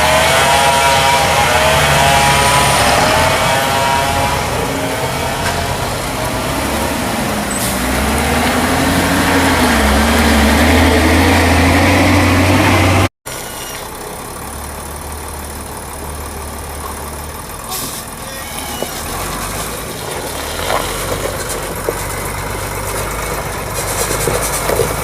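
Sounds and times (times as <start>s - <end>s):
diesel truck engine under load: 0.0s - 25.0s
quieter steady engine: 9.3s - 25.0s.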